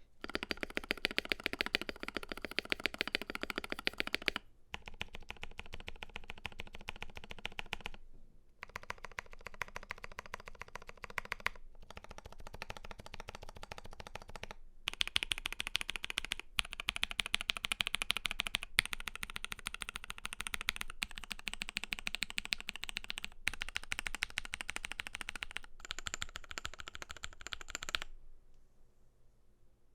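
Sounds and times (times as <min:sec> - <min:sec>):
mechanical keyboard typing: 0:00.0 - 0:08.0, 0:08.6 - 0:28.1.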